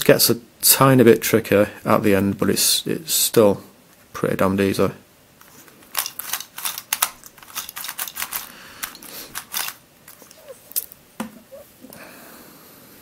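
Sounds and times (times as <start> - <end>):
plastic puzzle pieces clacking: 5.4 - 11.0
handling noises: 5.4 - 12.0.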